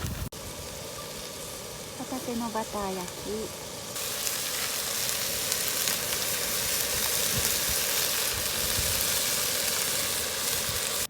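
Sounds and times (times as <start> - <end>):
scallops sizzling in butter: 0.1 - 11.0.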